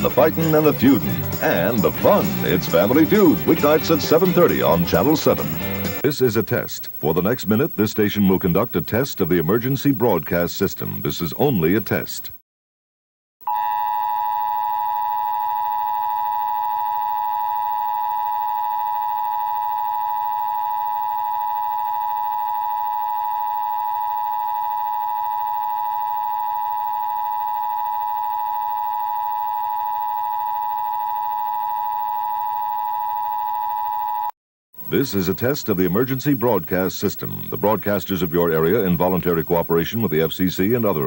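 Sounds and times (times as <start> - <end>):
steady alarm tone: 0.0 - 9.6, 13.4 - 41.0.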